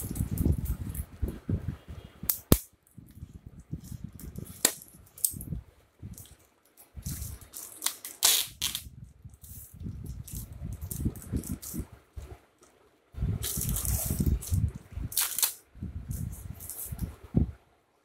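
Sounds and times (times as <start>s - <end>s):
packaging crinkling: 7.1s - 8.8s, 13.4s - 15.6s.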